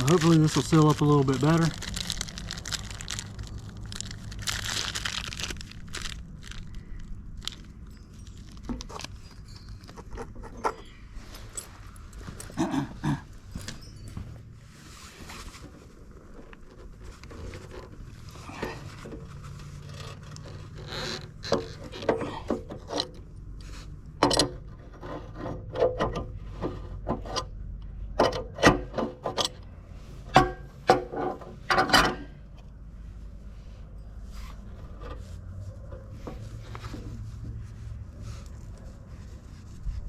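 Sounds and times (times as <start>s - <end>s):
metal tools clinking and knocking: 7.5s - 12.7s.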